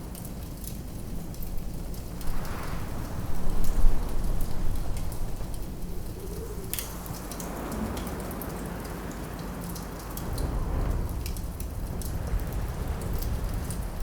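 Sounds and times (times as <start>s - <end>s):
low rush of wind: 0.4s - 14.0s
wood fire crackling and popping: 1.9s - 7.7s.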